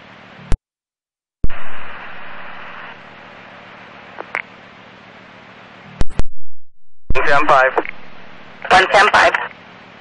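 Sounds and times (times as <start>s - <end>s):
radio static hiss: 1.4s - 4.5s, 7.1s - 9.6s
radio click: 7.1s - 9.4s
short radio chirps: 7.1s - 9.4s.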